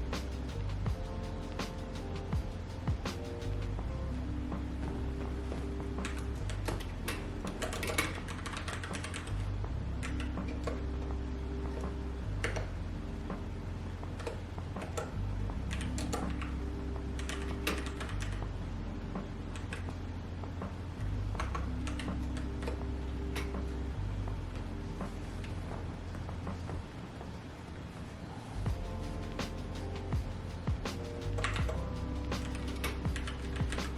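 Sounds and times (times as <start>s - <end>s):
soft background music: 0.0s - 33.9s.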